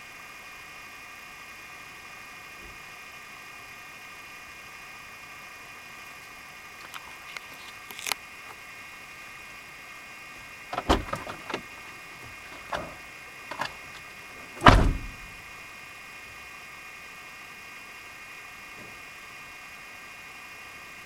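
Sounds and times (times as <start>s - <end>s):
knocks and thumps: 10.8s - 15.4s.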